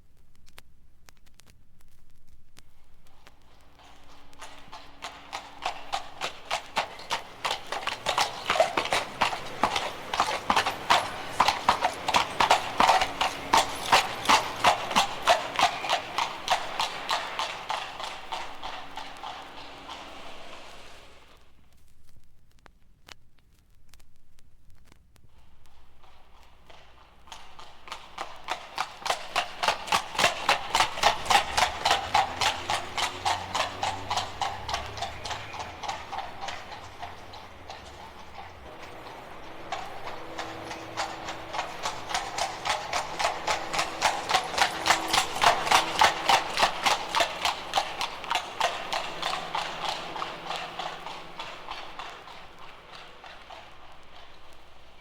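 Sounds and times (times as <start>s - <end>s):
horse hoofbeats clip-clop: 0.0s - 22.6s, 24.3s - 55.0s.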